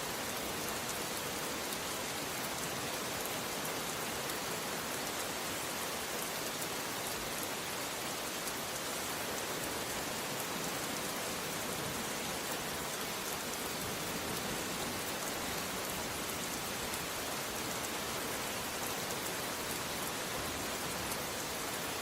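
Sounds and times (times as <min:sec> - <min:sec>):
steady rain hiss: 0:00.0 - 0:22.0.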